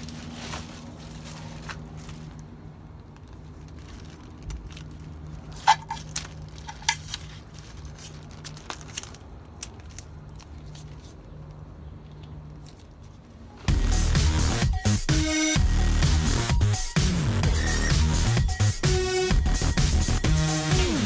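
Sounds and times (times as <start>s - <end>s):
parts and packaging handled: 0.0s - 13.7s.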